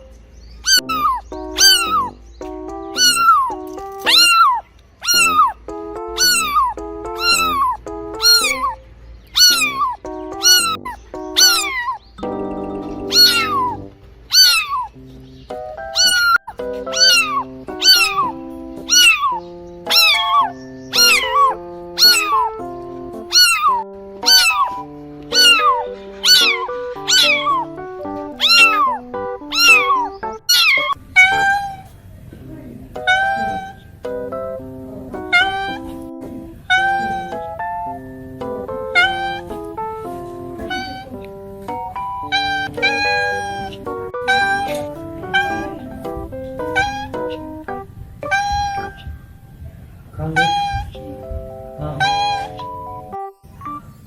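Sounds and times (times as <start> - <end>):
cat meowing: 0.6 - 2.2, 3.0 - 5.6, 6.2 - 8.8, 9.4 - 12.0, 13.1 - 15.0, 15.9 - 32.0, 32.7 - 34.0, 34.9 - 38.0, 38.9 - 39.6, 40.6 - 41.2, 42.2 - 47.6, 48.2 - 49.2, 50.2 - 51.2, 51.8 - 52.7
background music: 0.7 - 4.5, 5.2 - 31.6, 33.0 - 49.1, 51.0 - 54.0.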